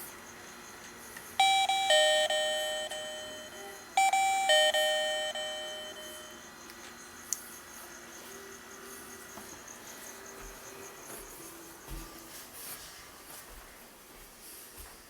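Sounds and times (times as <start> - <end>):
doorbell ding-dong chime: 1.4 - 6.4.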